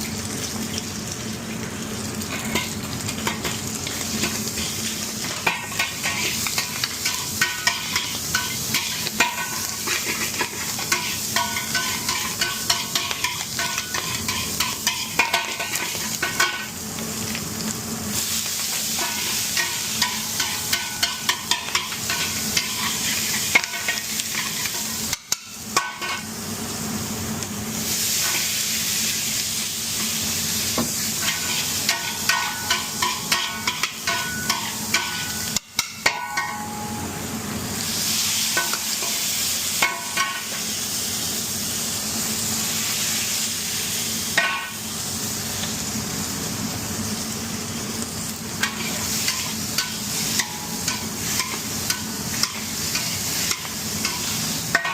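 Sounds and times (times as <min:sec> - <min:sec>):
food sizzling in a pan: 0:00.0 - 0:54.9
metal spatula clinking on pan: 0:31.3 - 0:36.9.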